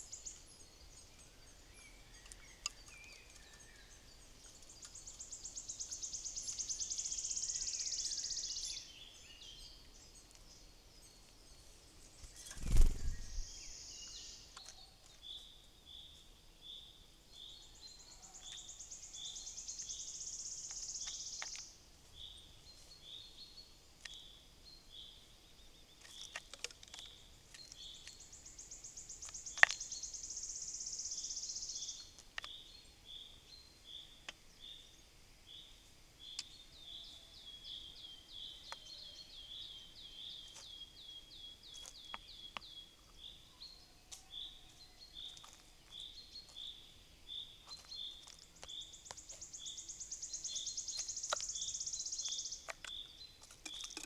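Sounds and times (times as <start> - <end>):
short bird chirps: 12.2 - 14.3.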